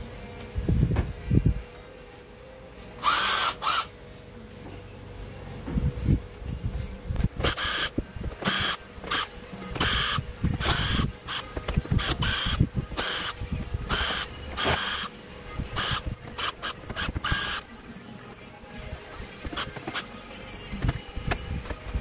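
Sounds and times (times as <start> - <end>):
electric screwdriver whirring: 3.0 - 3.9, 7.3 - 15.1, 15.7 - 17.7, 19.3 - 20.1.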